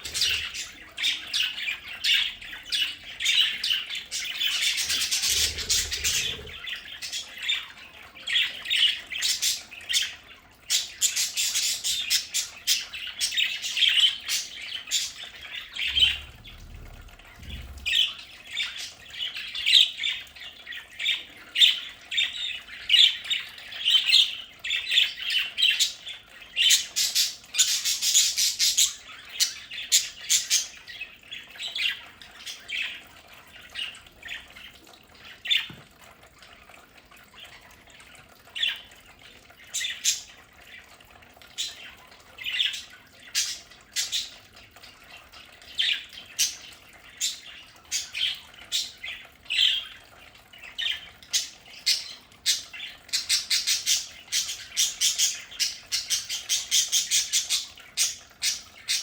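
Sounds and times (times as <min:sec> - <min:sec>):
budgerigars chattering and squawking: 0:00.0 - 0:33.0, 0:50.6 - 0:59.0.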